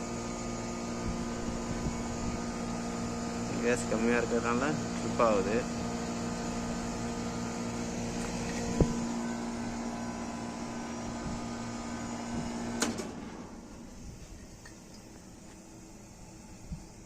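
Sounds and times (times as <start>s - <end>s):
air conditioner compressor humming: 0.0s - 17.0s
compressor click: 8.1s - 9.1s, 10.7s - 15.9s.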